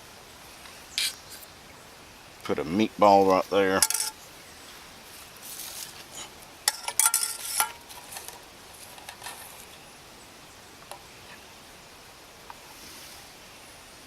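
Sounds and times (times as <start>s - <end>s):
metal utensil scraping metal cup: 3.8s - 4.2s, 6.2s - 8.4s.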